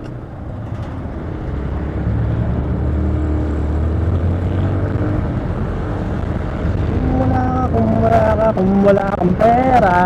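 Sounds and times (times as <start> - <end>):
road noise: 0.0 - 10.0
wind noise: 0.0 - 10.0
motorcycle engine accelerating: 1.4 - 8.6.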